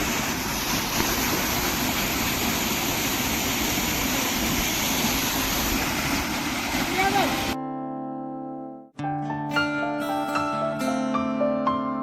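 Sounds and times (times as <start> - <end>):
waterfall rushing: 0.0 - 7.6.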